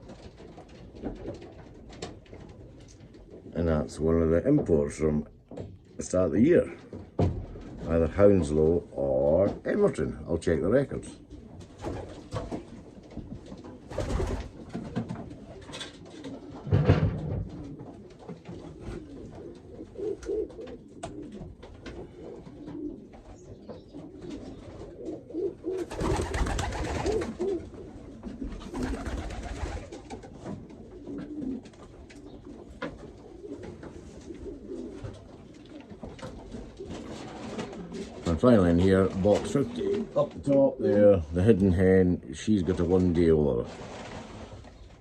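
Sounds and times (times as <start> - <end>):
pigeons cooing: 10.9 - 41.4
rustling bursts: 25.8 - 27.6.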